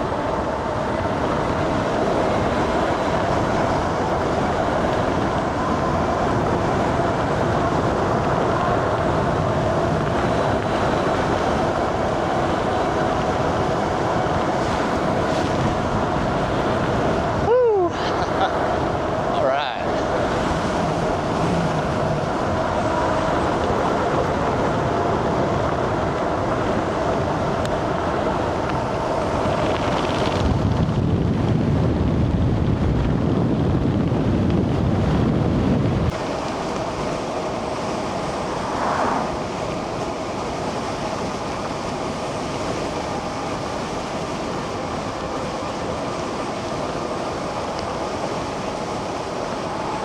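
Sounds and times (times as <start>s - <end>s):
heavy low rumble: 0.0s - 36.6s, 38.0s - 40.0s
electric bike running: 0.0s - 50.0s
wind buffeting microphone: 0.0s - 50.0s.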